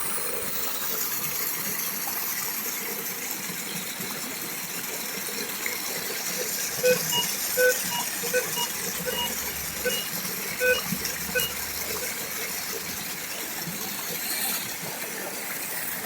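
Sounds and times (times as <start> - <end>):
short repeated tones: 6.8 - 12.2.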